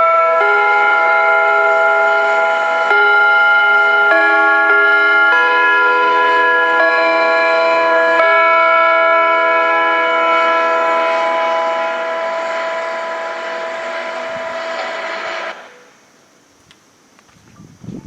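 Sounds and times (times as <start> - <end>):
electronic bell chime over loudspeakers: 0.0 - 15.8.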